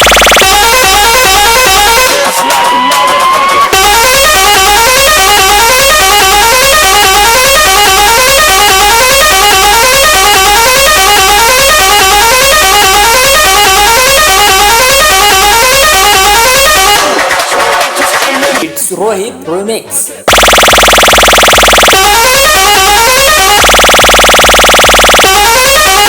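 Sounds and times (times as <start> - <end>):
deep electronic bass beat: 0.0 - 17.4, 20.3 - 26.0
musical truck horn phrase: 0.5 - 2.4, 3.7 - 17.2, 22.0 - 23.7, 25.2 - 26.0.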